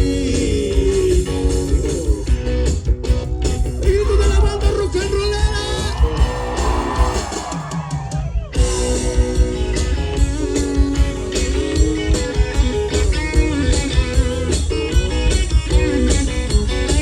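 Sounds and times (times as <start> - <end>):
bass guitar: 0.0 - 17.0
electric guitar: 0.0 - 17.0
steady drum beat: 0.0 - 17.0.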